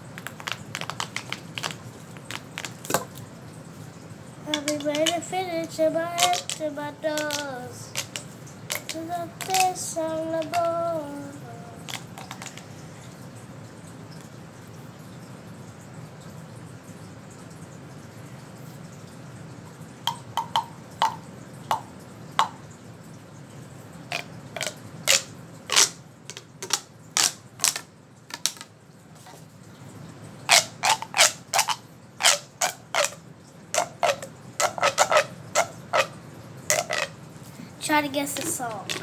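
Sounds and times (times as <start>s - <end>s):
fidget toy popping: 0.0s - 3.2s, 4.5s - 12.8s, 20.1s - 22.6s, 24.1s - 29.4s, 30.5s - 33.2s, 33.8s - 37.2s, 38.3s - 39.0s.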